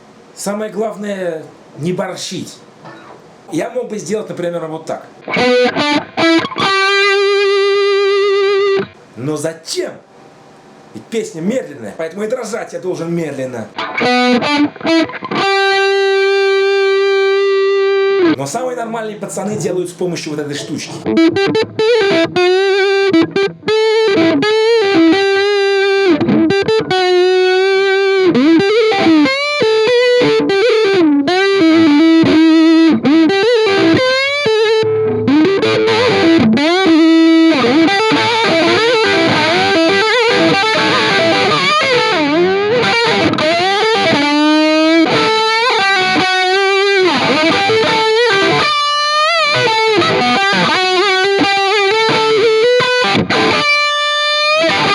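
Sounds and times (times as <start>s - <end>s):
distorted electric guitar melody: 2.8s - 3.3s, 5.2s - 9.0s, 13.7s - 18.4s, 20.6s - 54.9s.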